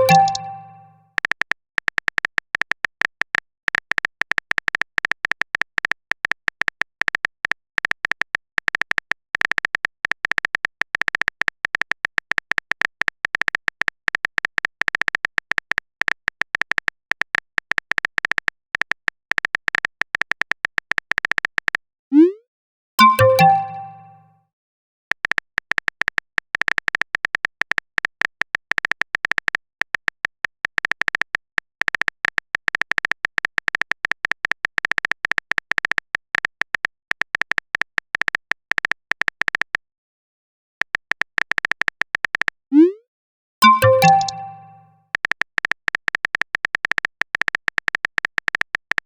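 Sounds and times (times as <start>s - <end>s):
phone keyboard typing clicks: 0.0s - 0.9s, 23.0s - 24.2s, 43.6s - 44.8s.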